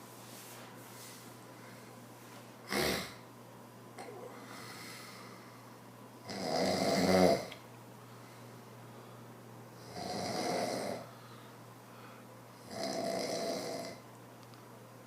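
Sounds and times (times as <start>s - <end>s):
man snoring: 2.7s - 3.2s, 6.2s - 7.5s, 9.8s - 11.1s, 12.6s - 14.0s.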